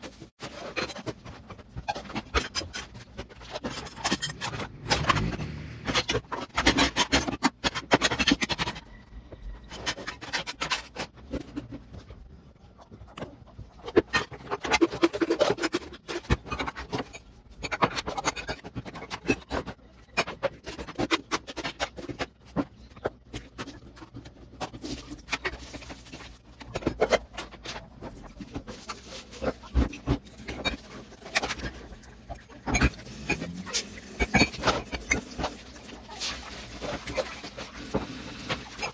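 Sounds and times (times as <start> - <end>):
scrubbing and scraping: 0.0 - 38.9
knocks and clatter: 0.1 - 9.0.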